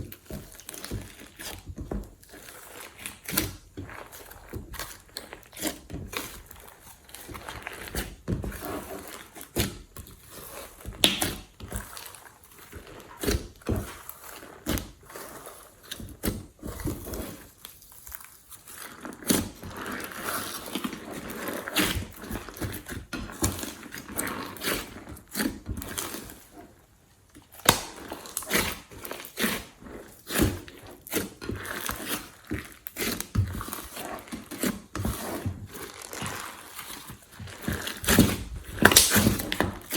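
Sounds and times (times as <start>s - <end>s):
slime squished by hand: 27.5s - 39.9s.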